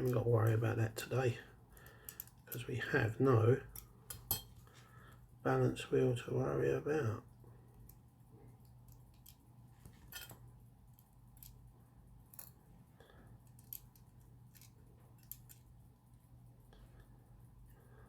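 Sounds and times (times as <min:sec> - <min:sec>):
faint steady hum: 0:00.0 - 0:18.0
small metal tools clicking: 0:01.8 - 0:02.6, 0:13.4 - 0:15.6.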